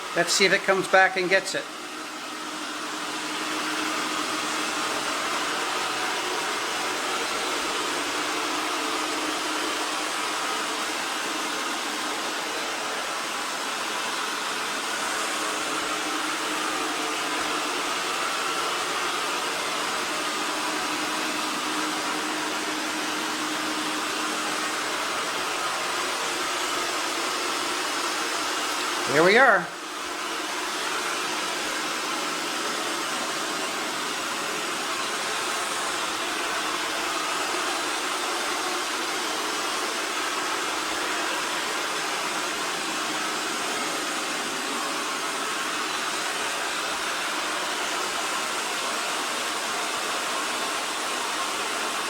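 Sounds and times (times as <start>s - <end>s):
robot vacuum suction motor: 0.0s - 52.0s.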